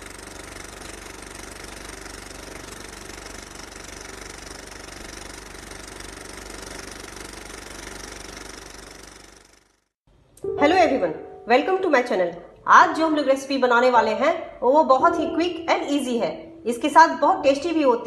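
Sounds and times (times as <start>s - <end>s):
small motor running: 0.0s - 9.9s.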